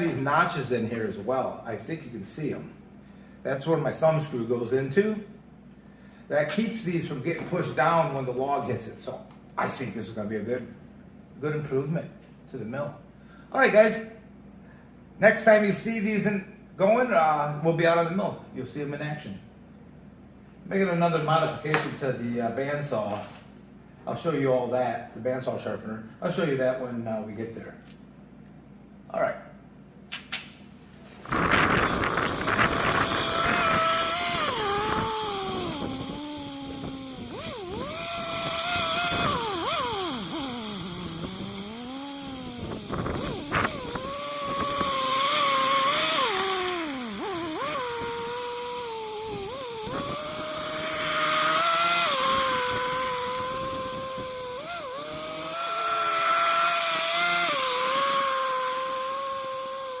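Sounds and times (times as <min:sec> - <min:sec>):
engine revving: 0:31.2 - 1:00.0.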